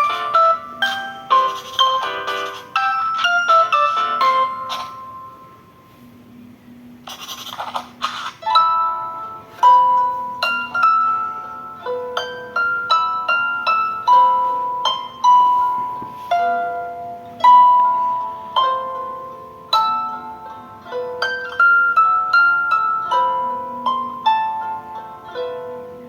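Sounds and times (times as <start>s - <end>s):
plucked harp-like ringtone melody: 0.0s - 6.0s, 8.0s - 26.0s.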